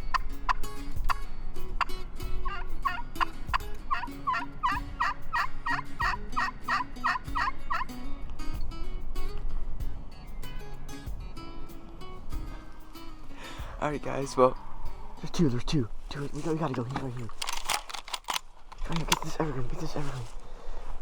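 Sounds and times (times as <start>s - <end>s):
low wind rumble: 0.0s - 21.0s
turkey yelps: 2.5s - 3.0s, 3.9s - 7.9s
sharp clicks: 16.7s - 19.4s.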